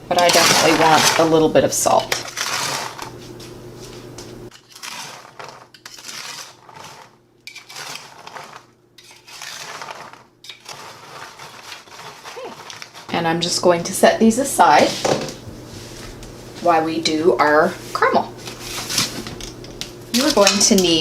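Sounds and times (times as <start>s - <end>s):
nuts rattling on metal sheet: 0.1s - 3.1s.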